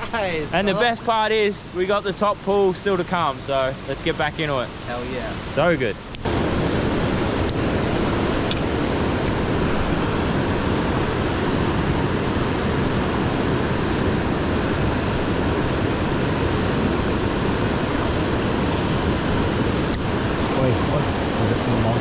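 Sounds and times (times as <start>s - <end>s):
creek water rushing over rocks: 5.4s - 22.0s.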